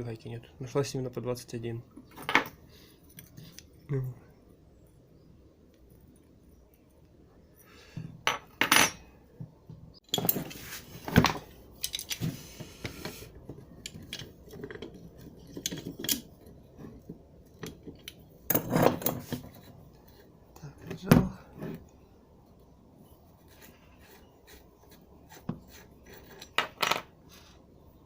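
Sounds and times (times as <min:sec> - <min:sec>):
metal tools clinking: 0:10.1 - 0:12.2, 0:13.8 - 0:16.5.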